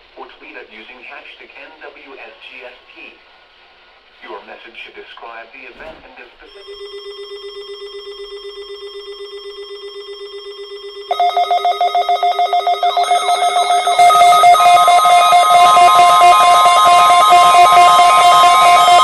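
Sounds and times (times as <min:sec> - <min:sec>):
pulsing electronic tone: 0:06.7 - 0:19.0.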